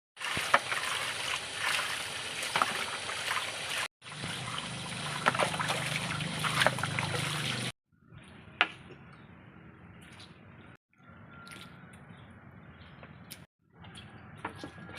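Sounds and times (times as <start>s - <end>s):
water running and splashing: 0.2s - 7.8s.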